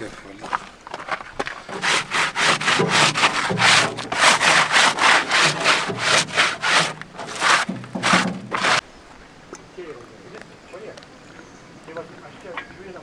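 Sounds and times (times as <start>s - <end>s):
hand tool scraping: 0.4s - 8.8s.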